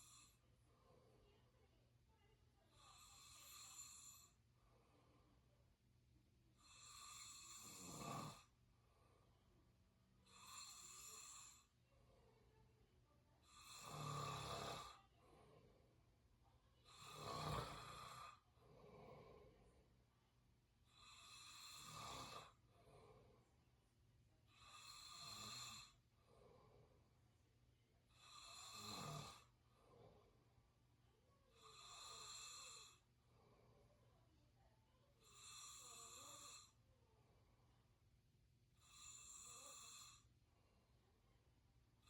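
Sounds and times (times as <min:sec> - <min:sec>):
person snoring quietly: 0:00.0 - 0:00.4, 0:02.6 - 0:04.4, 0:06.6 - 0:08.6, 0:10.2 - 0:11.8, 0:13.4 - 0:15.7, 0:16.8 - 0:19.8, 0:20.9 - 0:23.4, 0:24.5 - 0:26.7, 0:28.1 - 0:30.2, 0:31.5 - 0:33.1, 0:35.1 - 0:36.9, 0:38.8 - 0:40.4.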